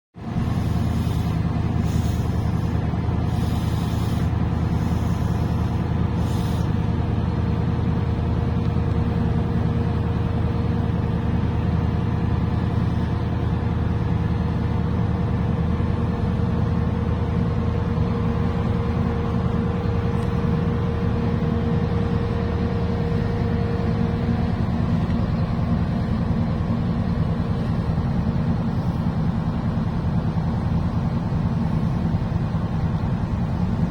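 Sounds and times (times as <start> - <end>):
large engine rumbling: 0.2 - 33.9
steady hum tone: 0.2 - 33.9
short hisses: 0.4 - 6.8.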